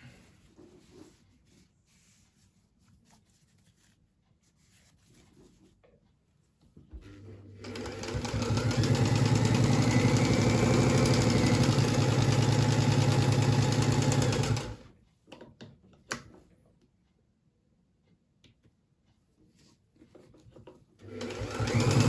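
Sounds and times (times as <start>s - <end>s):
electric sewing machine running: 7.6s - 14.8s, 21.0s - 22.0s.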